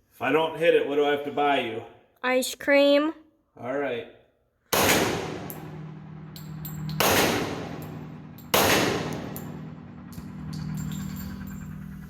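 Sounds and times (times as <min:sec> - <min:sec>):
pistol shots with ringing decay: 0:04.7 - 0:12.0.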